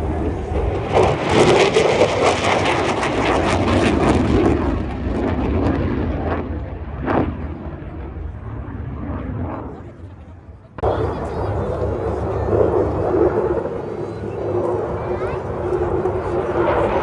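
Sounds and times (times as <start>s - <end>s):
low rumble: 0.0s - 2.0s
aircraft flying past: 0.0s - 17.0s.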